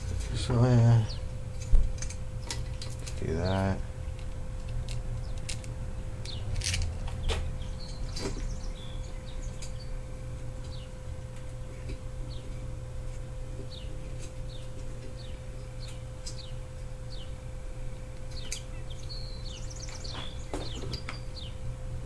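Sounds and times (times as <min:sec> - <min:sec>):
steady low hum: 0:00.0 - 0:22.0
birds chirping: 0:00.4 - 0:01.4, 0:02.3 - 0:03.9, 0:06.2 - 0:06.5, 0:07.1 - 0:12.9, 0:13.6 - 0:17.6, 0:18.2 - 0:21.6.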